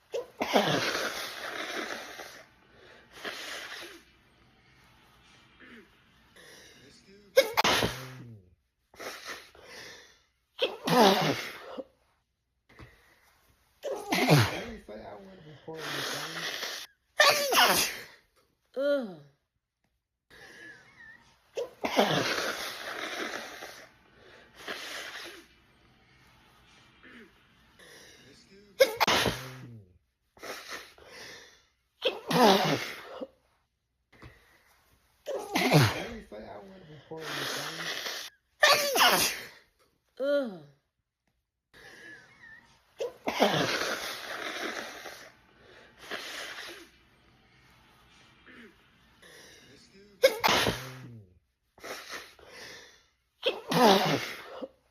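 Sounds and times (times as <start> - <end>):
wheezy in-breath: 0.0 - 7.0, 15.3 - 17.0, 20.3 - 28.4, 34.1 - 38.4, 41.8 - 47.1, 51.8 - 54.9
woman sneezing: 0.1 - 2.4, 7.4 - 8.4, 10.6 - 11.9, 13.8 - 15.0, 15.7 - 18.2, 21.6 - 23.7, 28.8 - 29.8, 32.0 - 33.3, 35.3 - 39.6, 42.4 - 45.2, 50.2 - 51.2, 53.4 - 54.7.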